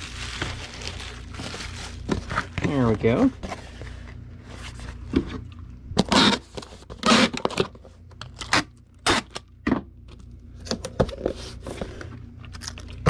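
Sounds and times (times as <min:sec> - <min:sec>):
handling rustle: 0:00.0 - 0:05.1.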